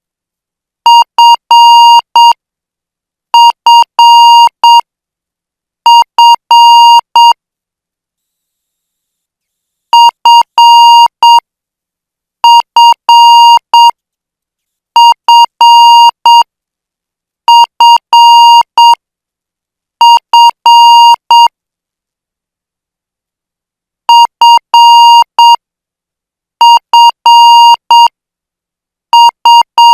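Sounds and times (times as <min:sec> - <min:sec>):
morse code tone: 0:00.9 - 0:02.3, 0:03.4 - 0:04.8, 0:05.9 - 0:07.4, 0:10.0 - 0:11.4, 0:12.4 - 0:13.9, 0:15.0 - 0:16.4, 0:17.5 - 0:19.0, 0:20.0 - 0:21.5, 0:24.1 - 0:25.6, 0:26.6 - 0:28.1, 0:29.2 - 0:29.9.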